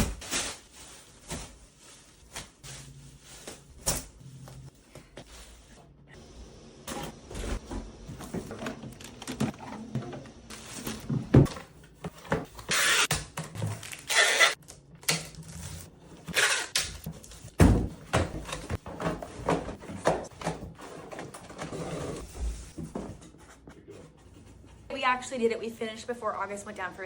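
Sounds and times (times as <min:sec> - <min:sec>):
boxes knocking and thumping: 0:07.0 - 0:12.5, 0:17.5 - 0:23.5.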